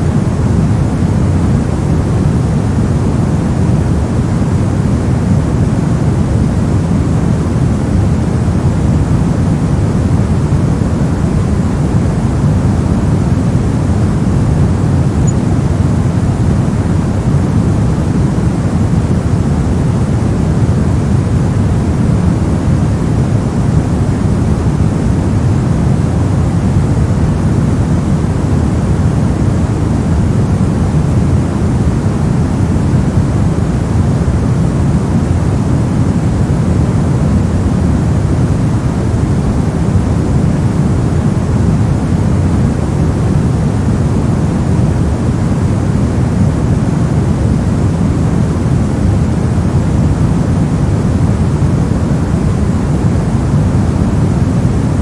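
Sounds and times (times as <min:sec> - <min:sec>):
deep rumbly steady noise: 0:00.0 - 0:55.0.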